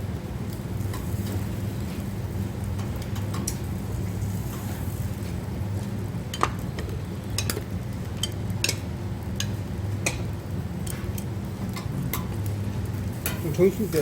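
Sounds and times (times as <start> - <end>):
steady low hum: 0.0 - 14.0
utensils clicking against dishes: 6.3 - 12.4, 13.2 - 14.0.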